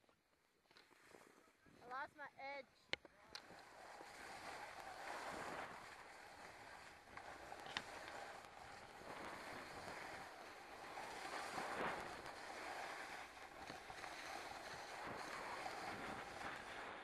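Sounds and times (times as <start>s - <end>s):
snowboard scraping over snow: 3.5s - 17.0s.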